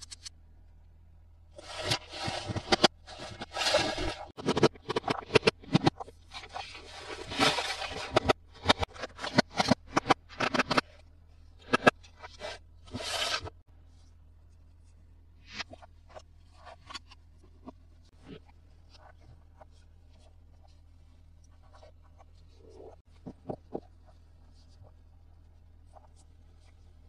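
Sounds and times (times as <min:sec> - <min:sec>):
packaging scrapes crinkles and clicks: 0:01.6 - 0:10.9.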